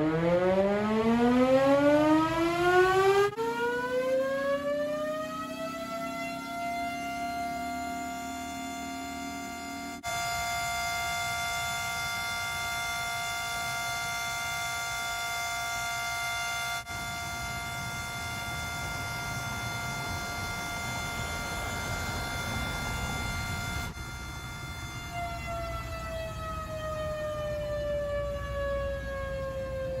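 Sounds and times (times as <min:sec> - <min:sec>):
civil defense siren: 0:00.0 - 0:30.0.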